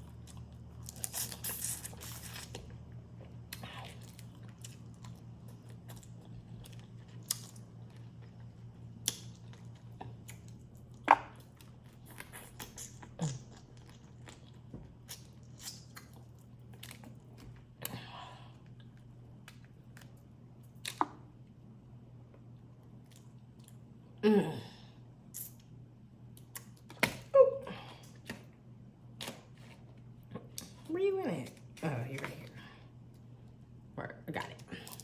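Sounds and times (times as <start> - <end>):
chewing with shell snaps: 0.0 - 18.0, 18.6 - 21.3, 26.3 - 27.3, 29.2 - 30.9
steady low hum: 0.0 - 35.0.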